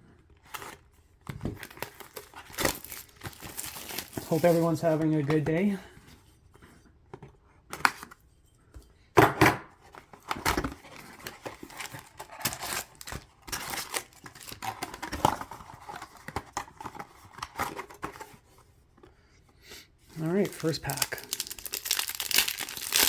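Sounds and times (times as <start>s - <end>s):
plastic wrap crinkling: 1.5s - 5.8s, 10.2s - 16.1s, 20.1s - 23.0s.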